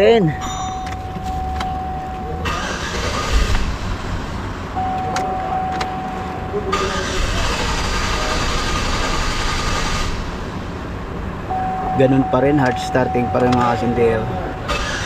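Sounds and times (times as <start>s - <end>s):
electronic warning tone: 0.1s - 2.7s, 4.8s - 7.3s, 11.5s - 14.7s
engine cranking on starter: 2.4s - 3.8s, 6.7s - 10.1s, 14.7s - 15.0s
clicks: 4.9s - 6.0s, 13.4s - 13.8s.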